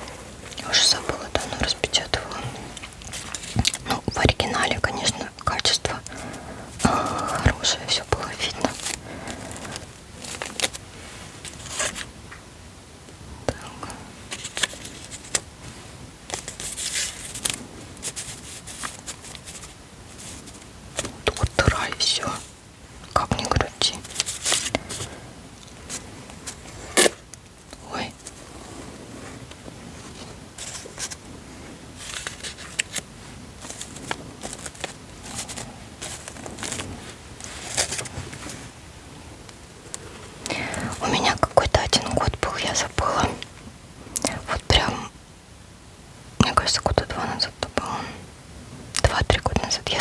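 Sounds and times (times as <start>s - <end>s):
paper rustling: 0.4s - 12.2s, 14.3s - 15.6s, 16.2s - 22.6s, 23.4s - 27.2s, 29.2s - 31.3s, 31.9s - 38.7s.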